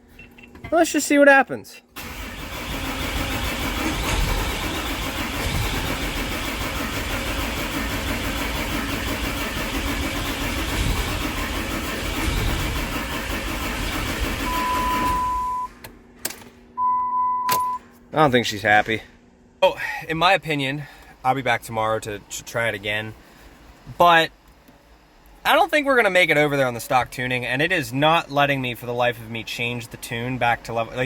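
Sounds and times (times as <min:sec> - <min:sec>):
diesel engine cranking: 0:02.0 - 0:15.8
steady beep: 0:14.5 - 0:15.7, 0:16.8 - 0:17.9.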